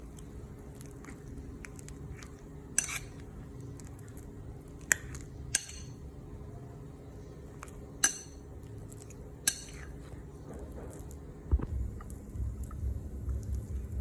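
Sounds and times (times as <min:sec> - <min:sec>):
low steady hum: 0:00.0 - 0:14.0
metal utensil clinking dishes: 0:05.5 - 0:06.0, 0:08.0 - 0:08.4, 0:09.4 - 0:10.0.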